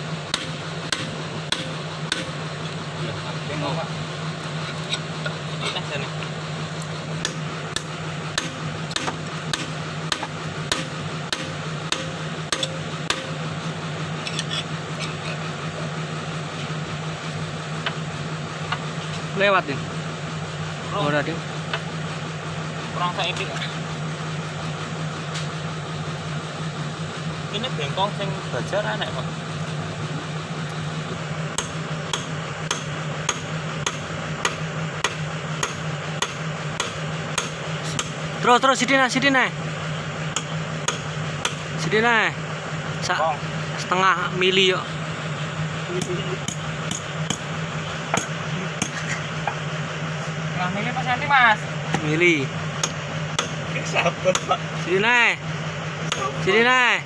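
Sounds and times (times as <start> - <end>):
excavator engine idling: 0.0 - 57.0
steady low hum: 0.0 - 57.0
hammer striking steel: 0.3 - 2.4, 7.2 - 13.5, 31.5 - 38.2, 40.3 - 41.8, 46.0 - 47.5, 48.1 - 49.1, 52.8 - 54.6, 56.1 - 56.5.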